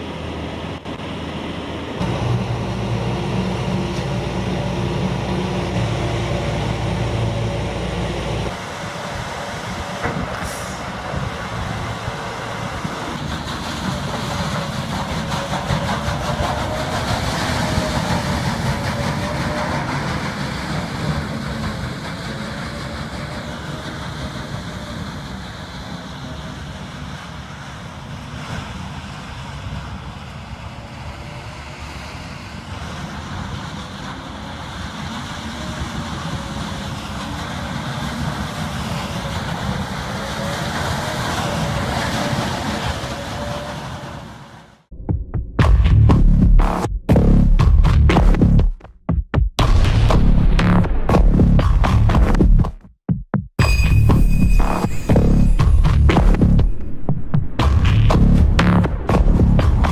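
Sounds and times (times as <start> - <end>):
off-road vehicle engine whining: 0.0 - 28.1.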